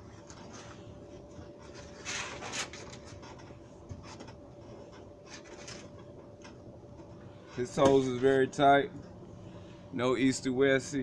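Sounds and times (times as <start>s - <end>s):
scratching and rustling: 0.0s - 8.3s
faint steady hum: 0.0s - 11.0s.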